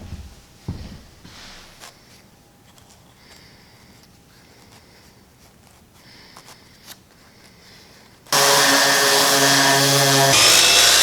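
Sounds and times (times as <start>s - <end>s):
electric power tool running: 8.3s - 11.0s.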